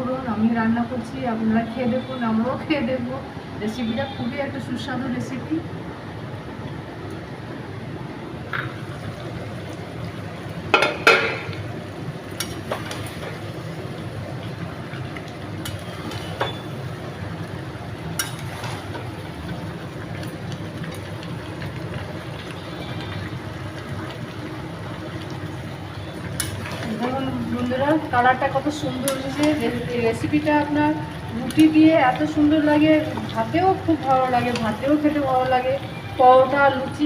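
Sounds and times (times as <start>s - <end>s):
food frying in a pan: 6.0s - 37.0s
metal clinking and scraping on pan: 12.4s - 13.4s, 18.2s - 19.1s, 26.3s - 27.3s, 28.8s - 29.8s.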